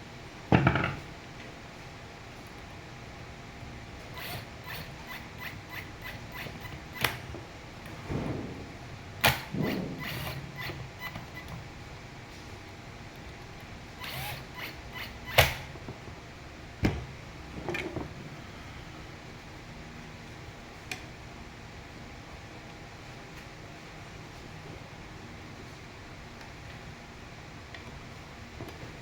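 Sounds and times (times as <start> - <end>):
sharp clicks and knocks: 4.2 - 11.6
rustling and scraping: 7.8 - 10.5.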